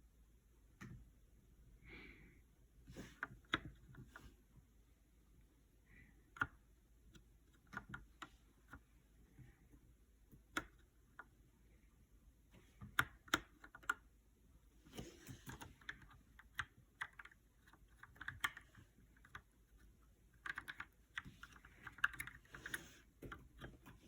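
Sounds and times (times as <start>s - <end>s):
mechanical keyboard keystrokes: 15.4s - 19.5s, 20.4s - 24.0s.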